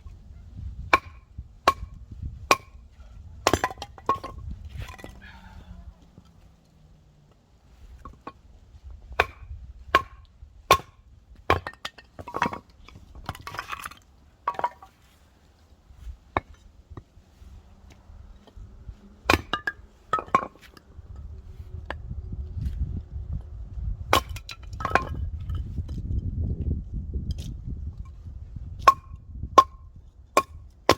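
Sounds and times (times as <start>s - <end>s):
firewood being chopped: 0.9s - 2.8s, 3.4s - 5.4s, 9.2s - 14.9s, 19.3s - 20.8s, 24.1s - 25.2s.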